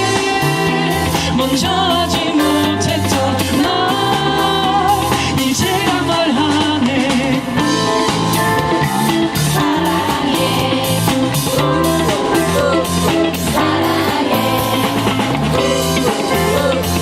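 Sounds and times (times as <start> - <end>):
person singing: 0.0 - 7.6, 15.6 - 17.0
live pop band playing: 0.0 - 17.0.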